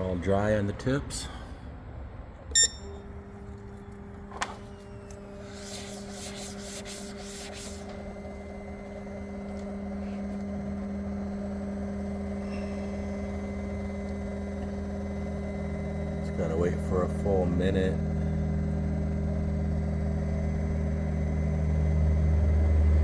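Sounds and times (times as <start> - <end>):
fuel pump humming: 0.0 - 23.0
short electronic beep: 2.5 - 3.2.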